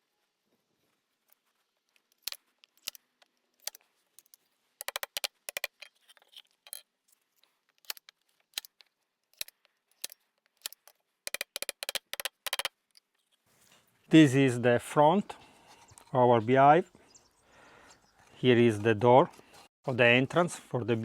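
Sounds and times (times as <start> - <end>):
wood pieces clicking and knocking: 1.9 - 13.2.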